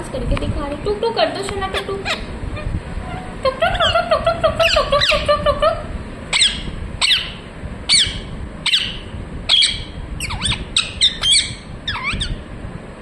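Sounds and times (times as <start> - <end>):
parakeet squawking: 1.6 - 5.4, 6.3 - 12.5.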